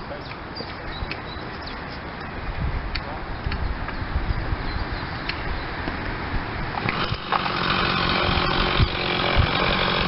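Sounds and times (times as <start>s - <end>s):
two-stroke chainsaw engine running: 6.8s - 10.0s.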